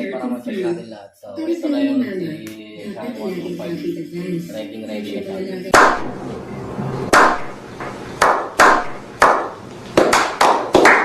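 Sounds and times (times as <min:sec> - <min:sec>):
sharp slaps or knocks: 0:05.7 - 0:06.1, 0:07.1 - 0:11.0.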